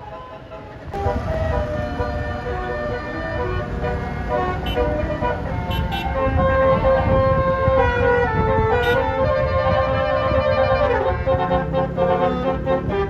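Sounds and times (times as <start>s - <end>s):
bus horn playing a tune: 0.0s - 13.0s
engine and traffic rumble: 0.0s - 13.0s.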